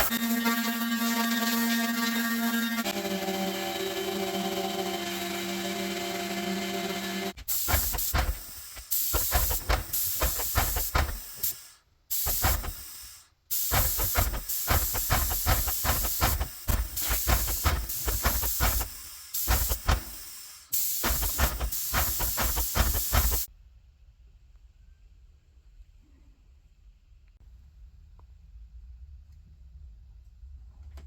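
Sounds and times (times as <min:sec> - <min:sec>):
paint sprayer hissing: 0:07.3 - 0:23.5.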